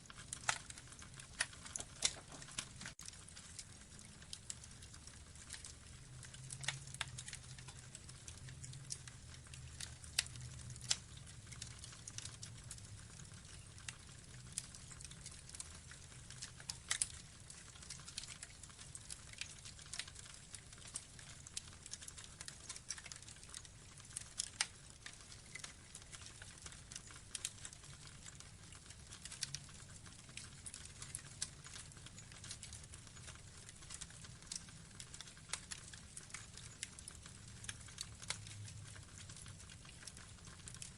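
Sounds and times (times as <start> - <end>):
burning logs crackling: 0.0 - 40.9.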